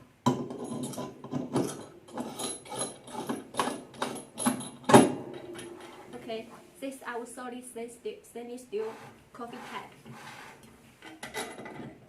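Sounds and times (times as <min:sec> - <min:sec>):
metal parts clicking and clattering: 0:00.3 - 0:06.2, 0:11.0 - 0:12.0.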